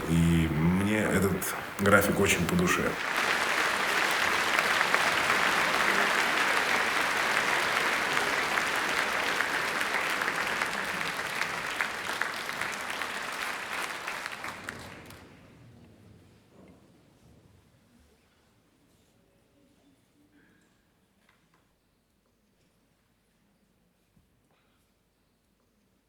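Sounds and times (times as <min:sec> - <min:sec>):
audience applauding: 0:00.0 - 0:15.4.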